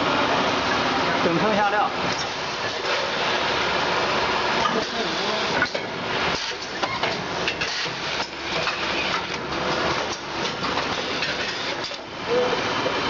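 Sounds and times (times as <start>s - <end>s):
packaging machine running: 2.2s - 13.0s.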